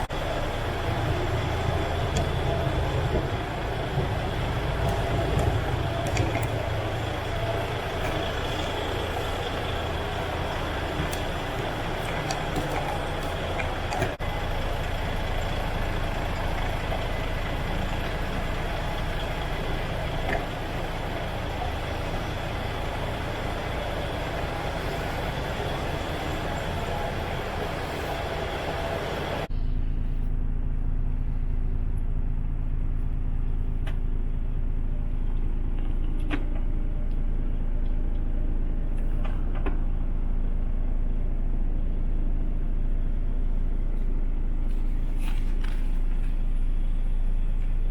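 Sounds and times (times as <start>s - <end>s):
deep engine hum: 0.0s - 47.9s
diesel engine idling: 0.0s - 47.9s.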